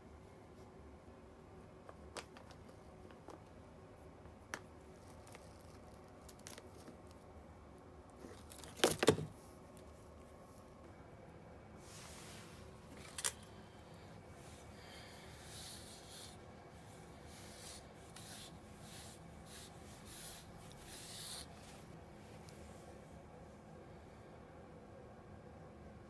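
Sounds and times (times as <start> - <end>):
soft scratchy rustles: 11.8 - 23.2.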